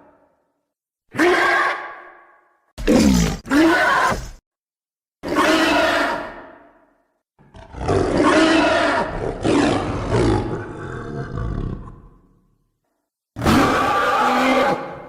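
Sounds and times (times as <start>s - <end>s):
dinosaur roar: 2.8s - 4.4s, 13.4s - 15.0s.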